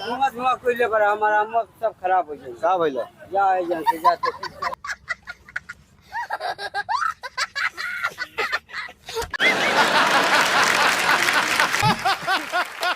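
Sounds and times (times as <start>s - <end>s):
snickering and laughter: 3.8s - 12.9s.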